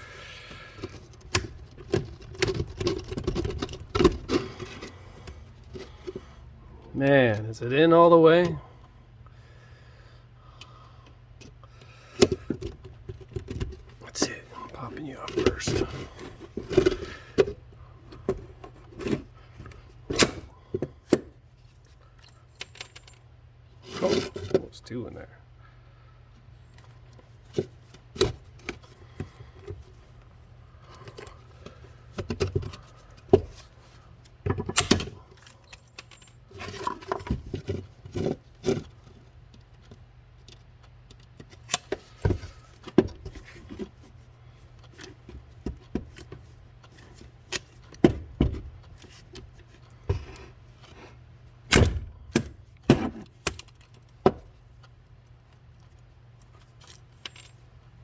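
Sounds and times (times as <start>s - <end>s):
faint low hum: 0.0s - 58.0s
metal parts and tools clinking: 22.2s - 24.4s, 34.7s - 37.3s, 56.4s - 57.7s.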